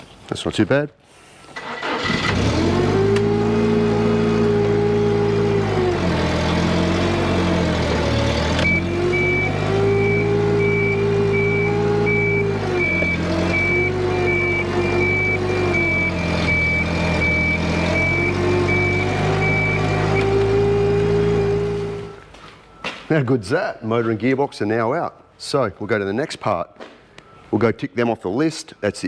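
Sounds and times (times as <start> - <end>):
heavy machine engine revving: 1.6 - 22.2
reversing alarm beeping: 8.2 - 23.1.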